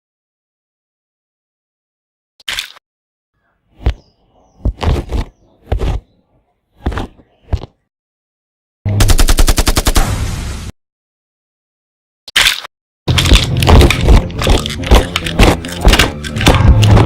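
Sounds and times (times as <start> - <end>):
machine-gun burst: 9.0 - 10.2.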